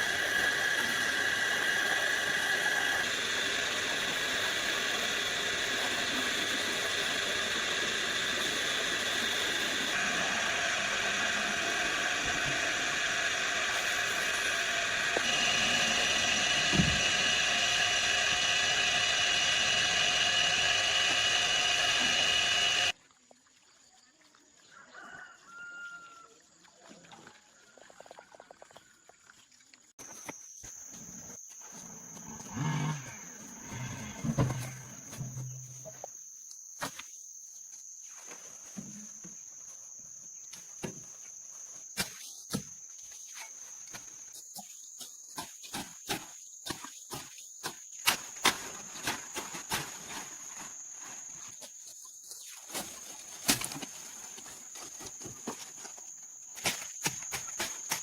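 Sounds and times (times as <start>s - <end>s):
high-pitched insect chirr: 0.0s - 22.9s, 30.0s - 53.1s.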